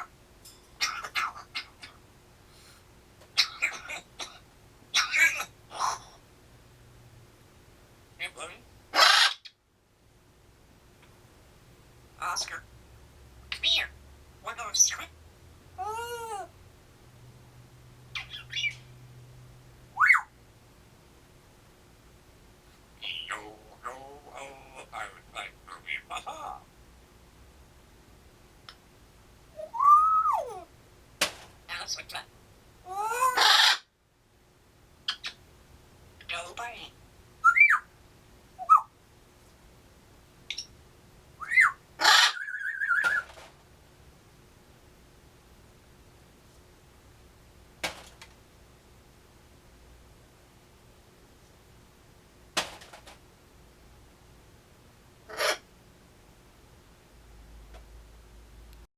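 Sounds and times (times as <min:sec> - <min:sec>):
parrot squawking: 0:00.8 - 0:02.0, 0:03.3 - 0:06.2, 0:08.2 - 0:09.6, 0:12.2 - 0:12.6, 0:13.5 - 0:15.1, 0:15.8 - 0:16.5, 0:18.1 - 0:18.8, 0:20.0 - 0:20.3, 0:23.0 - 0:26.7, 0:29.6 - 0:30.7, 0:31.7 - 0:32.3, 0:32.9 - 0:33.9, 0:35.1 - 0:35.4, 0:36.2 - 0:37.9, 0:38.6 - 0:38.9, 0:41.4 - 0:43.3, 0:55.3 - 0:55.7
parrot whistling: 0:20.0 - 0:20.3, 0:29.6 - 0:30.6, 0:37.4 - 0:37.8, 0:41.4 - 0:43.2.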